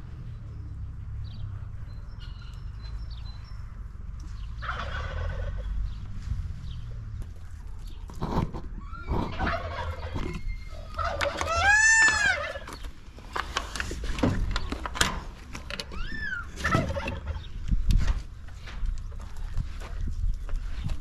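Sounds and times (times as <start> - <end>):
farmyard fowl calls: 4.5 - 5.9, 8.6 - 12.9, 16.0 - 17.6
turkey gobbling: 4.6 - 5.8, 8.8 - 12.7, 16.2 - 17.6.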